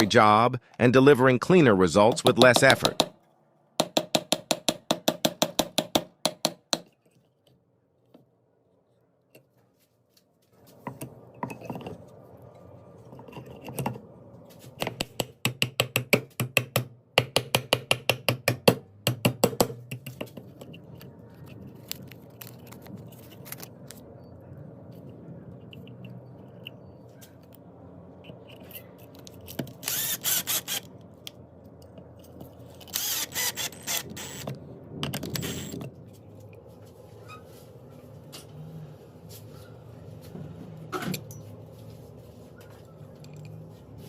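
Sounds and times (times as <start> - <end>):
low steady hum: 18.7 - 44.0.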